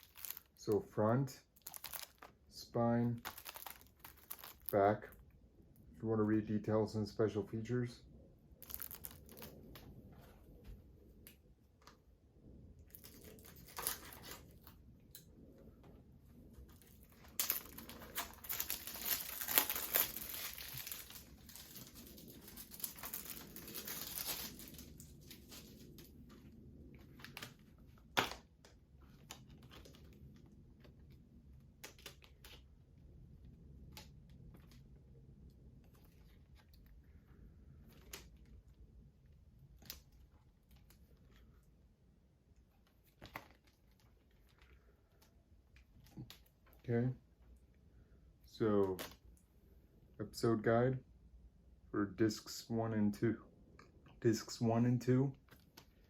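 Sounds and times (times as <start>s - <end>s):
plastic wrap tearing and crinkling: 0.0s - 0.7s, 1.6s - 2.3s, 3.2s - 4.8s, 8.6s - 9.8s, 12.9s - 14.7s, 16.8s - 26.1s.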